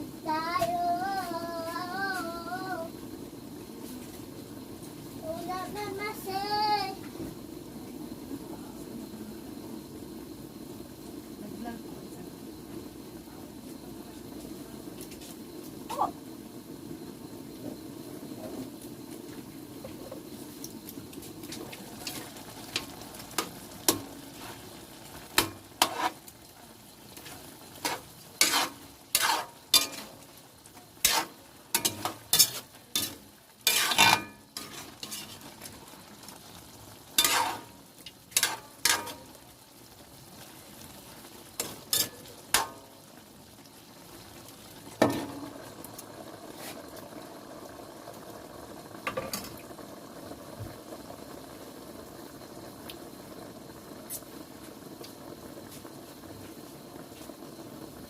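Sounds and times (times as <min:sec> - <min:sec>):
food sizzling: 0:00.0 - 0:58.0
utensil scraping a frying pan: 0:25.4 - 0:26.2, 0:27.8 - 0:30.2, 0:31.0 - 0:35.6, 0:37.2 - 0:39.3.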